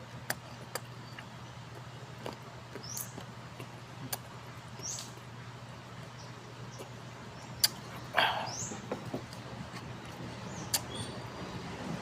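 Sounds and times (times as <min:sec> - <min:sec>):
steady low hum: 0:00.0 - 0:12.0
crisp chewing clicks: 0:00.2 - 0:05.2, 0:07.6 - 0:07.8
wet mouth smacks: 0:07.6 - 0:07.9, 0:10.7 - 0:10.9.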